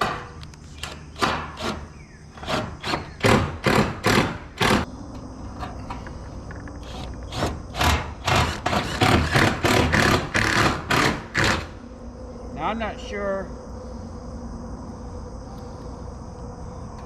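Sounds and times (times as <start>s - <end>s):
thuds on metal roofing panels: 0.0s - 1.8s.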